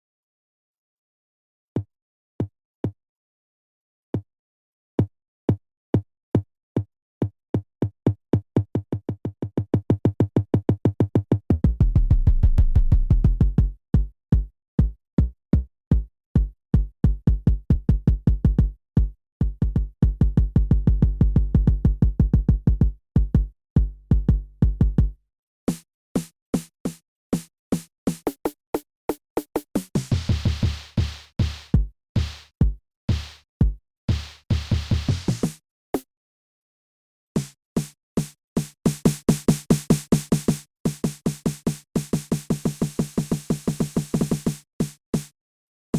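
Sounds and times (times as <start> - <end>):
drum machine beat: 11.1 - 35.6, 37.4 - 45.3.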